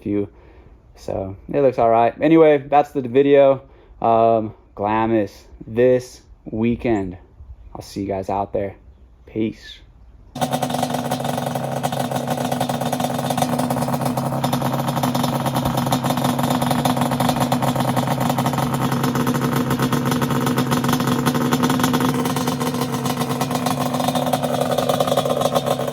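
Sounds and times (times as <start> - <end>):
two-stroke engine running: 10.4 - 25.9.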